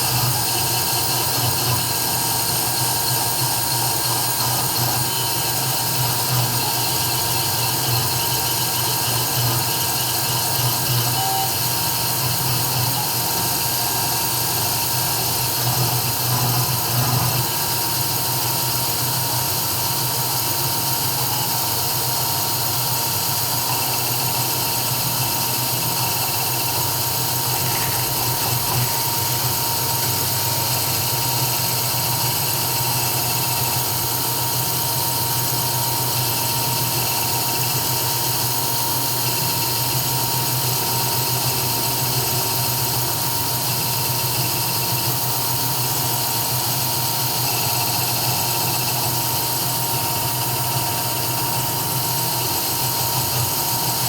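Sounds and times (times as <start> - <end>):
engraving router running: 0.0 - 18.3, 23.2 - 34.6.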